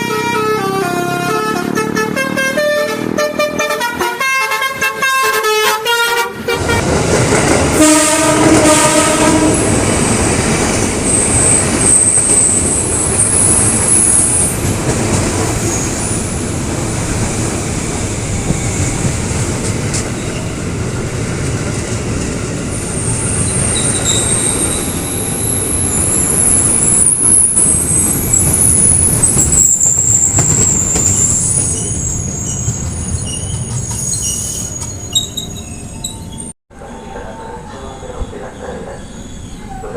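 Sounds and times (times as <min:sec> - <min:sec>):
train horn: 0:00.0 - 0:07.0, 0:07.7 - 0:09.9
train passing rumble: 0:00.0 - 0:39.9
wheel squeal: 0:23.0 - 0:36.5.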